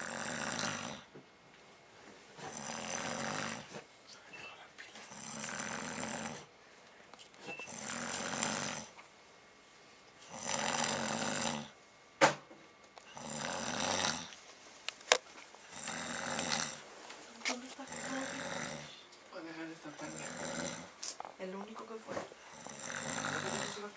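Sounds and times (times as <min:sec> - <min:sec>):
person snoring: 0:00.0 - 0:01.1, 0:02.4 - 0:03.8, 0:05.1 - 0:06.5, 0:07.7 - 0:09.0, 0:10.2 - 0:11.8, 0:13.0 - 0:14.4, 0:15.7 - 0:16.8, 0:17.8 - 0:19.0, 0:20.0 - 0:21.0, 0:22.4 - 0:23.9.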